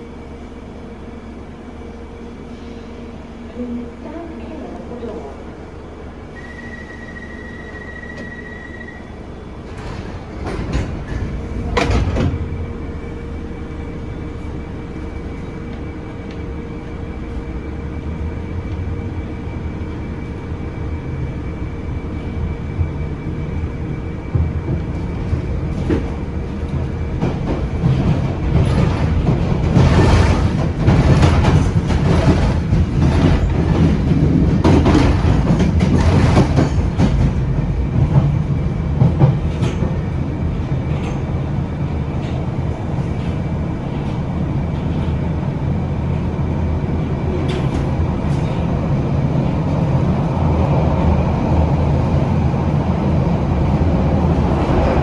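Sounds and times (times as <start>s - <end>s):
train humming: 0.0s - 55.0s
wheels clattering over rail joints: 24.4s - 41.4s.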